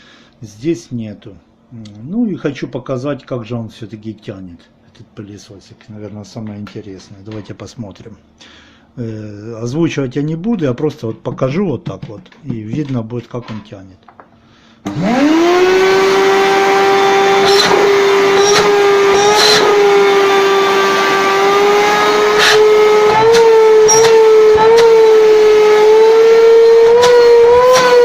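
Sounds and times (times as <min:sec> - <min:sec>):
vacuum cleaner motor whine: 0:14.8 - 0:28.0.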